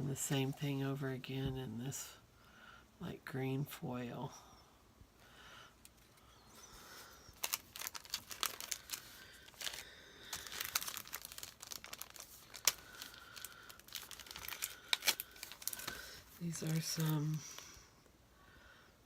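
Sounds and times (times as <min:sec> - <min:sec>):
sticker sheets crinkling and rustling: 0:07.0 - 0:17.7.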